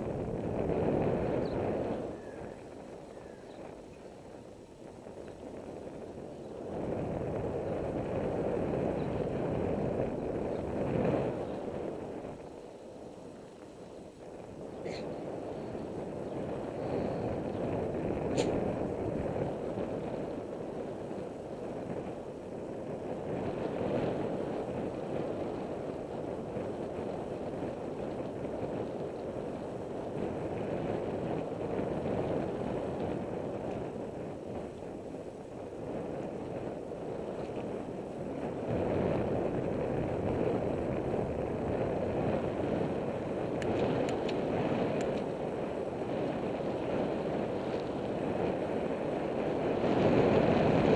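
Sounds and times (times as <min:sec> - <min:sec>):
road noise: 0:00.0 - 0:50.9
wind rushing over microphone: 0:00.0 - 0:50.9.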